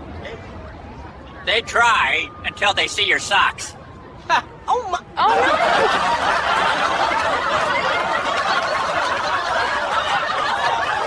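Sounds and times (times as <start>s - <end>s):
group of people laughing: 5.2s - 11.0s.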